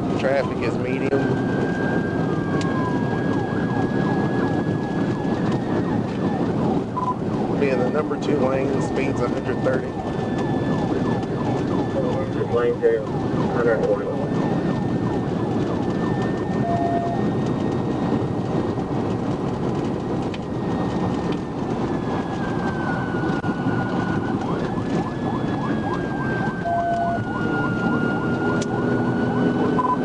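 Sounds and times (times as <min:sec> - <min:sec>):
police siren: 0:00.0 - 0:30.0
road and wind noise: 0:00.0 - 0:30.0
short beeps: 0:07.0 - 0:07.2, 0:16.6 - 0:17.2.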